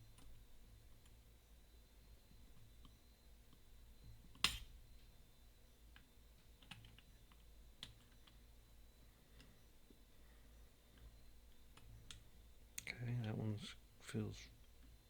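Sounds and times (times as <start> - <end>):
small clicks of lock picking: 5.9 - 8.4.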